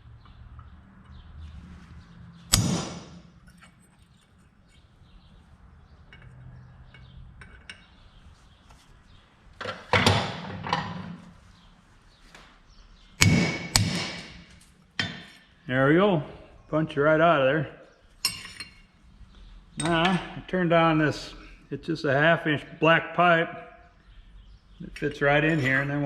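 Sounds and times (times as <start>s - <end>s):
hammer striking steel punch: 2.5s - 3.3s, 13.2s - 14.4s.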